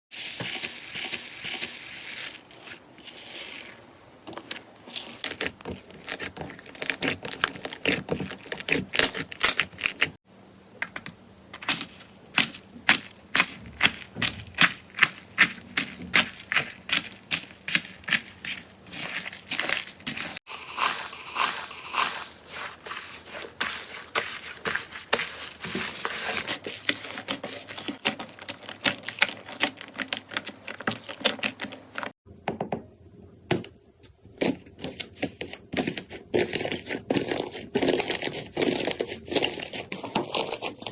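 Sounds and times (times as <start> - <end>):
slime popping and crackling: 4.9 - 10.2, 26.2 - 32.1.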